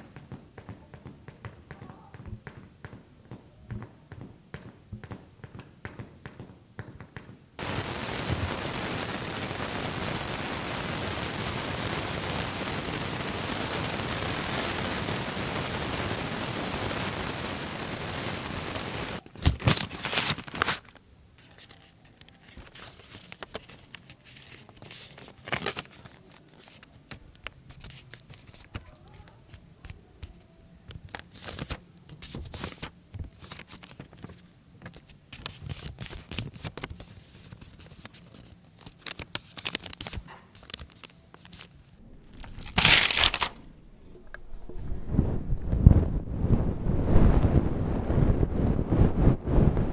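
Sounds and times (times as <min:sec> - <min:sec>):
steady hiss: 0:00.0 - 0:49.9
material crinkling and tearing: 0:19.2 - 0:44.6.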